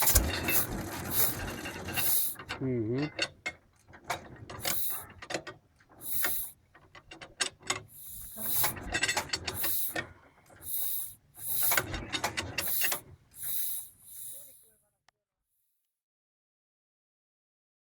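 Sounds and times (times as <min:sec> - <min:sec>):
short hiss: 0:00.0 - 0:01.4, 0:02.0 - 0:02.4, 0:04.6 - 0:05.0, 0:06.0 - 0:06.5, 0:07.9 - 0:08.8, 0:09.5 - 0:10.0, 0:10.6 - 0:11.9, 0:12.6 - 0:14.7
tractor engine cranking: 0:00.0 - 0:14.7.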